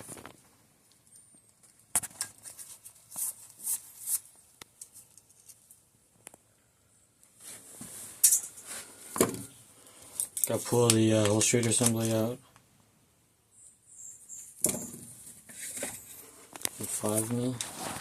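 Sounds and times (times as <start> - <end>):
metal tools clicking and scraping: 8.2 - 8.6.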